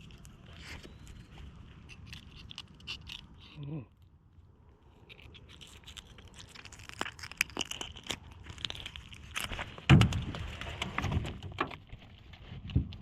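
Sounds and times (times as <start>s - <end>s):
sharp clicks and crackles: 0.0s - 4.1s, 4.9s - 13.0s.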